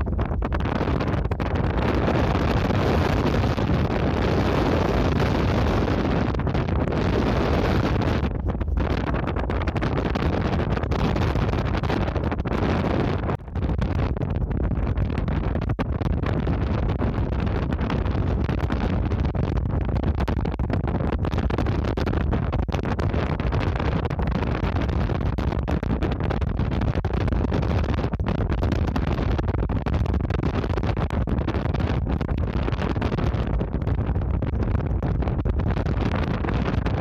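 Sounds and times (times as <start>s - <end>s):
ship engine rumble: 0.0s - 21.4s
wind buffeting microphone: 0.0s - 37.0s.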